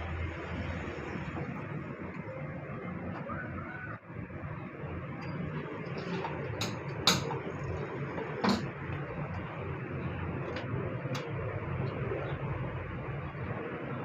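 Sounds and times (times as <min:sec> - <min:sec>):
steady background noise: 0:00.0 - 0:14.0
sharp clicks and knocks: 0:06.0 - 0:07.5, 0:08.1 - 0:09.5.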